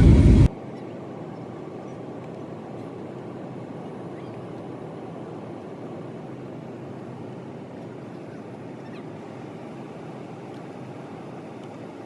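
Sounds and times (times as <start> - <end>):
airliner cabin engine hum: 0.0 - 6.7, 9.2 - 12.0.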